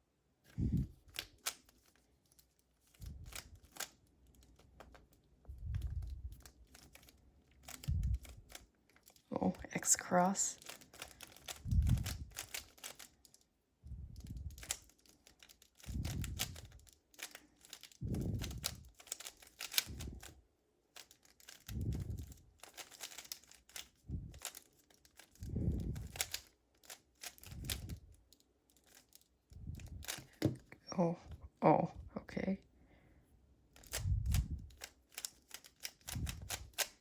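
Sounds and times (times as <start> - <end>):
puzzle cube clicking: 0.8 - 9.2, 9.9 - 13.4, 14.1 - 28.2, 28.8 - 30.7, 33.8 - 37.0
soft low sound: 33.8 - 34.8.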